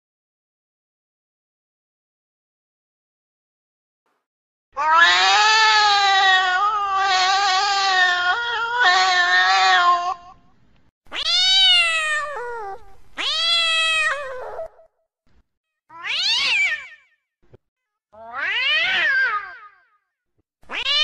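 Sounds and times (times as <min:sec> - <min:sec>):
cat yowling: 0:04.8 - 0:10.4, 0:11.1 - 0:14.9, 0:15.9 - 0:17.0, 0:18.2 - 0:19.8, 0:20.7 - 0:21.0.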